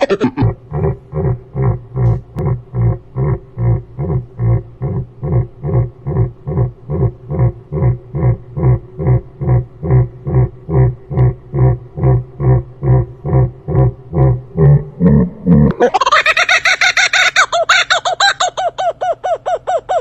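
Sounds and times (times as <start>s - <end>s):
bird giving low calls: 17.1s - 20.0s.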